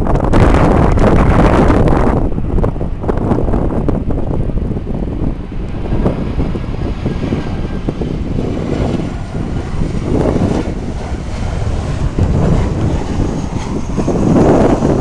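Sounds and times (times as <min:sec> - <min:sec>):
faint jet engines: 0:00.0 - 0:15.0
wind buffeting microphone: 0:00.0 - 0:15.0.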